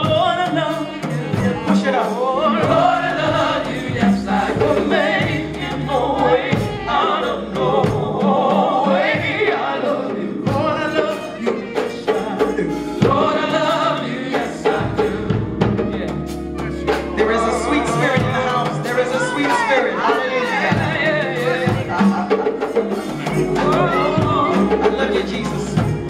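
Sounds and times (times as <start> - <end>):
bass line: 0.0 - 26.0
gospel choir singing: 0.0 - 26.0
drum hits: 2.6 - 7.1, 14.4 - 26.0.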